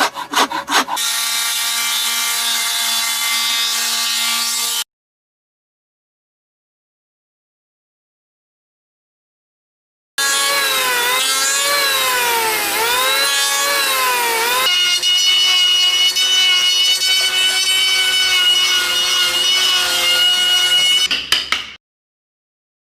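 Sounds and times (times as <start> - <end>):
power tool cutting wood: 0.0 - 4.9, 10.2 - 21.1.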